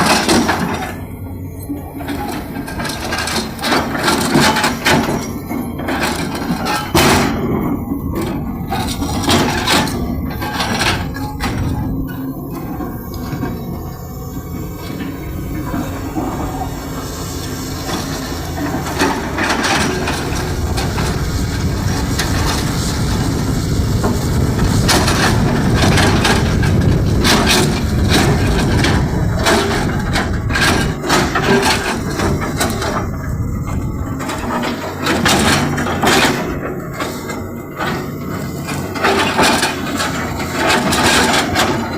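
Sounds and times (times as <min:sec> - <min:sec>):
backhoe engine rumbling: 0:00.0 - 0:41.9.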